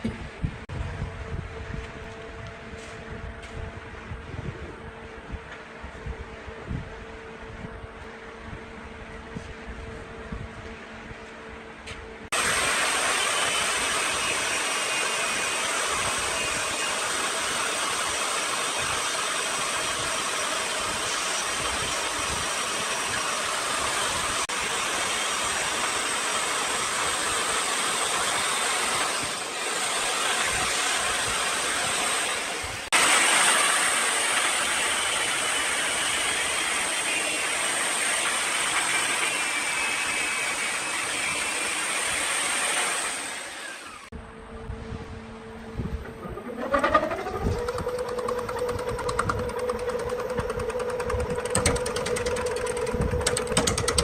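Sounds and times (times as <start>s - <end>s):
wood lathe turning wood: 12.4s - 44.1s, 46.1s - 54.0s.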